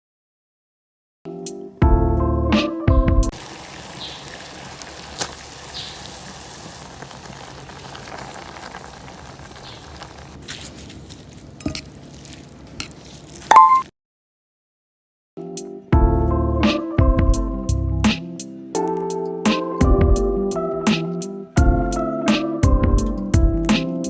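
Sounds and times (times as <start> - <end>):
food sizzling in a frying pan: 3.3 - 10.4.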